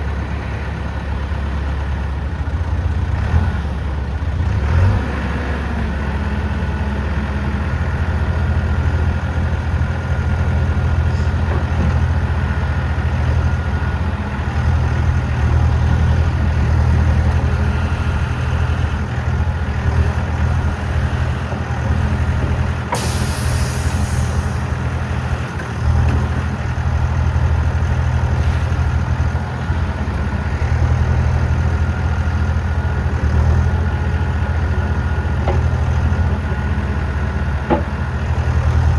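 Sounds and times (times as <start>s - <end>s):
diesel engine running: 0.0s - 38.9s
short hiss: 23.0s - 24.6s.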